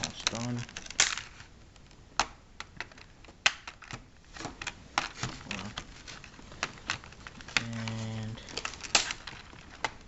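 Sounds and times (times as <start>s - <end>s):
plastic packaging handled: 3.0s - 10.0s.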